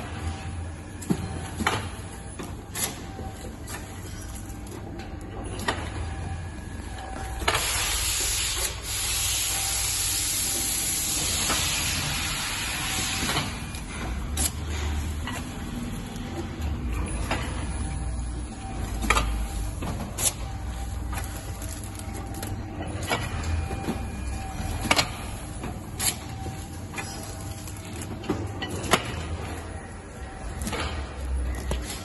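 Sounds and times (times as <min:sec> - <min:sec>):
loud machinery hiss: 0:07.5 - 0:13.4.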